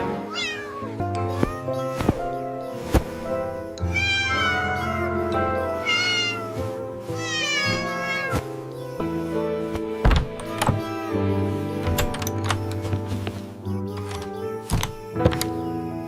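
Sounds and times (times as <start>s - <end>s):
background music: 0.0s - 16.0s
kitten meowing: 0.2s - 2.0s, 3.9s - 6.6s, 7.2s - 8.4s.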